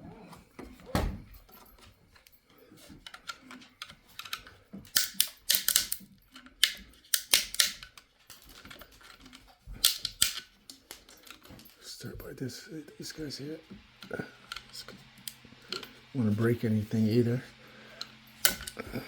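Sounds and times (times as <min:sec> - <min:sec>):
plastic snapping and cracking: 0:04.2 - 0:08.6, 0:09.7 - 0:11.1.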